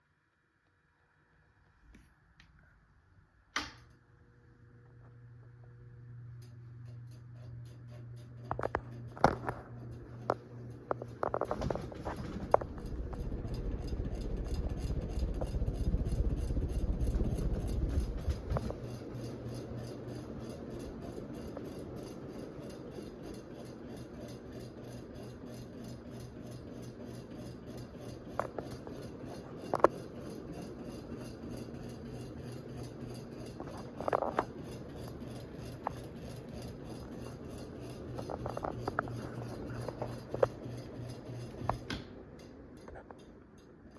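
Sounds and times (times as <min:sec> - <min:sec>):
ceiling fan motor hum: 0:00.2 - 0:43.9
low rumble: 0:11.5 - 0:18.8.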